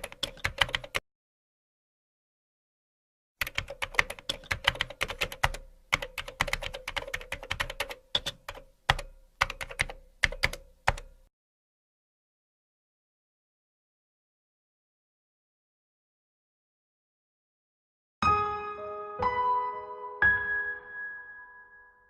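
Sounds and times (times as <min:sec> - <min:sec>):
keyboard typing: 0:00.0 - 0:01.0, 0:03.4 - 0:11.3.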